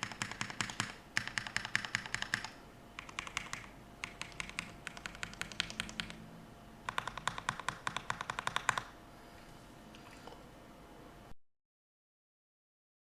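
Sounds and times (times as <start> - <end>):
mechanical keyboard typing: 0.0 - 6.2, 6.9 - 8.9.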